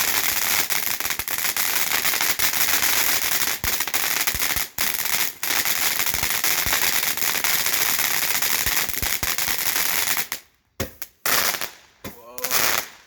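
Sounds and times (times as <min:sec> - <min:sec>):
fountain firework crackling: 0:00.0 - 0:10.4.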